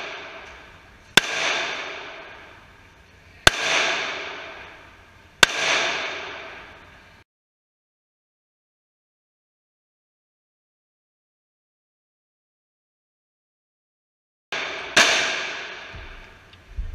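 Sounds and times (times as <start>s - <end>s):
gunshot echo: 0.0s - 2.7s, 3.4s - 7.0s, 14.6s - 16.4s
pistol shots: 0.0s - 2.7s, 3.4s - 7.0s, 14.6s - 16.4s.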